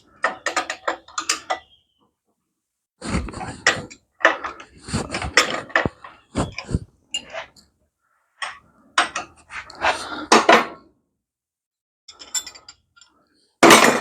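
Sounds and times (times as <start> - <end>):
metal wrenches clinking: 12.1 - 14.0.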